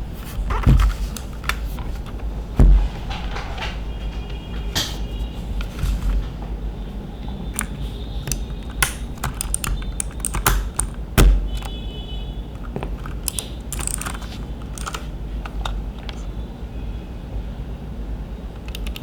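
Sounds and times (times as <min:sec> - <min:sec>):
mechanical keyboard key clicks: 0:07.6 - 0:11.8, 0:12.6 - 0:16.2, 0:18.6 - 0:19.0.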